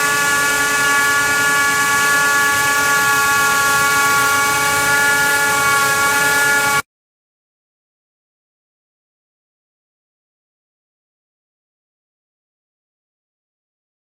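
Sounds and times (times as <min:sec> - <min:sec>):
wire saw whining: 0:00.0 - 0:06.9.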